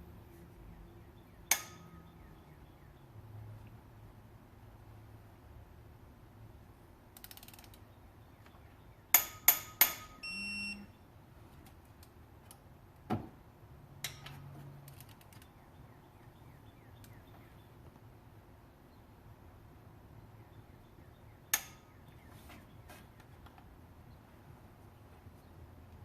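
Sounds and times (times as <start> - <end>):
sharp metallic clicks: 7.2 - 7.8
short electronic beep: 10.2 - 10.9.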